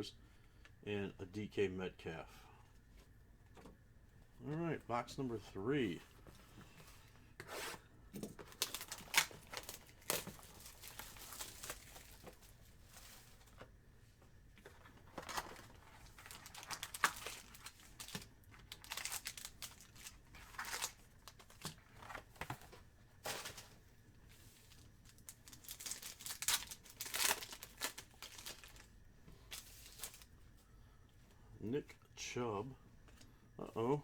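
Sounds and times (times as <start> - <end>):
packaging ripping and rustling: 8.4 - 13.6, 14.8 - 23.8, 24.4 - 30.3.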